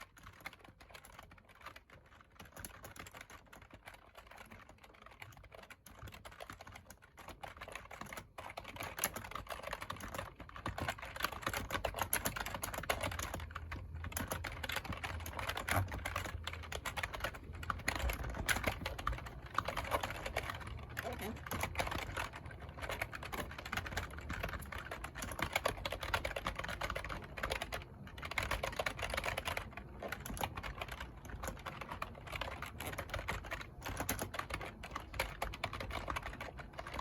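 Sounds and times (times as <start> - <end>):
typing on computer keyboard: 0.0 - 37.0.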